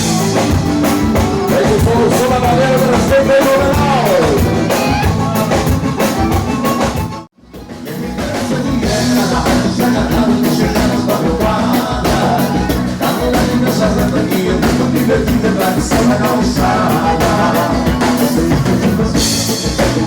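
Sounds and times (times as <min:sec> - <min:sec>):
live dance band playing: 0:00.0 - 0:20.0.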